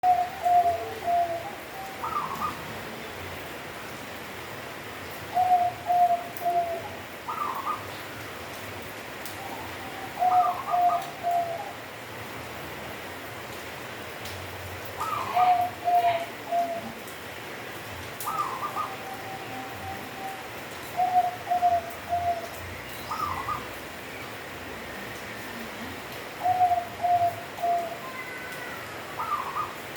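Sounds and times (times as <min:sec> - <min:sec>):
dove cooing: 0:00.0 - 0:02.7, 0:05.3 - 0:07.8, 0:09.4 - 0:11.8, 0:15.0 - 0:17.1, 0:18.2 - 0:23.8, 0:26.4 - 0:29.9.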